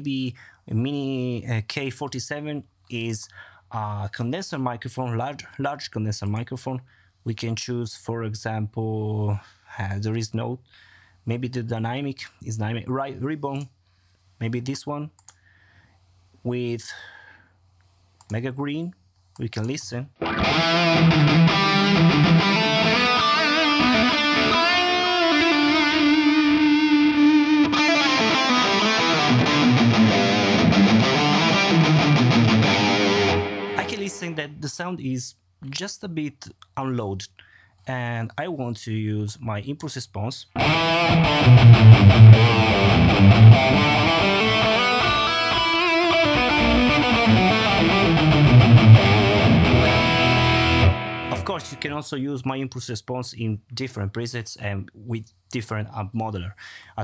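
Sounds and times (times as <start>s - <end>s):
distorted electric guitar: 20.2s - 34.4s, 40.6s - 51.9s.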